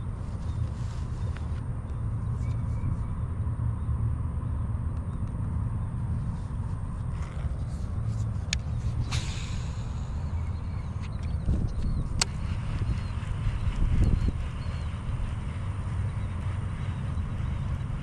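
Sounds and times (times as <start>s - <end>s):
wind rumble on microphone: 0.0s - 18.0s
sharp clicks: 8.4s - 18.0s
brief swish: 9.0s - 10.1s.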